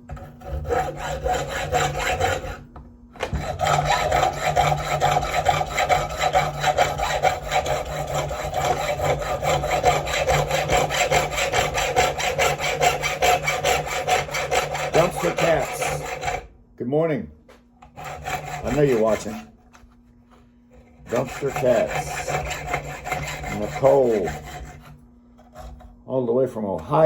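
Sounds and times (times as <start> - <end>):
reciprocating saw cutting metal: 0.1 - 2.6, 3.2 - 16.5, 18.0 - 19.5, 21.0 - 25.0.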